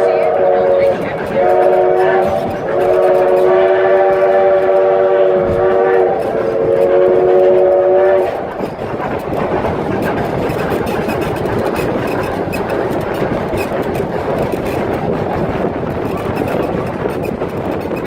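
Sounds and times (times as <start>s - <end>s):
train air horn chord: 0.0s - 8.4s
train wheels rumbling on rail: 0.0s - 18.0s.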